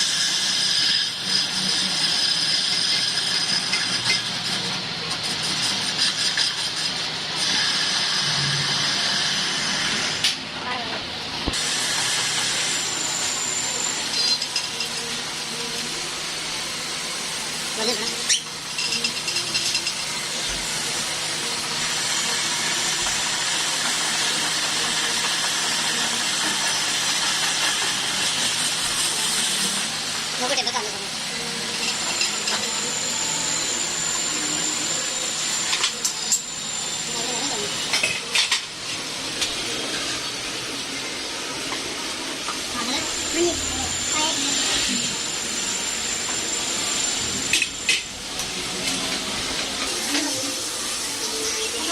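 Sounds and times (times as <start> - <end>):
hissing machine-shop noise: 0.0 - 51.9
metal tools clinking: 18.0 - 20.0.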